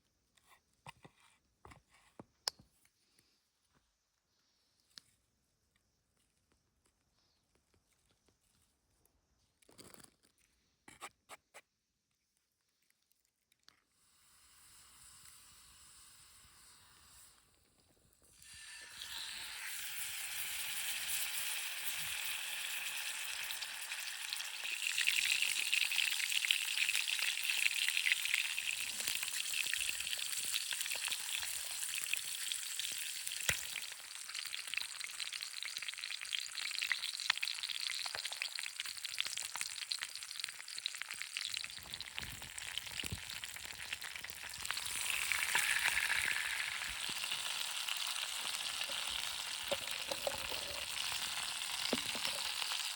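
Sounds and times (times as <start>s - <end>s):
food sizzling in a pan: 14.1s - 17.6s, 18.3s - 52.9s.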